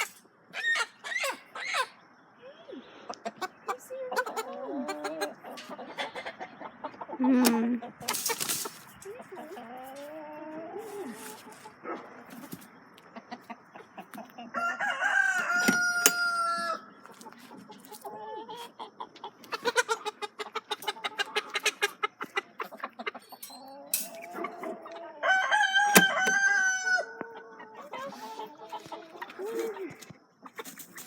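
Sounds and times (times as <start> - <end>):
chicken clucking and cackling: 0.0 - 31.0
rooster crowing: 14.5 - 16.9, 24.0 - 28.4.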